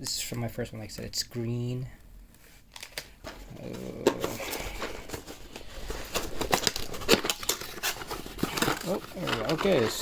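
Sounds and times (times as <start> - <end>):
packaging rustling and clicking: 2.7 - 10.0.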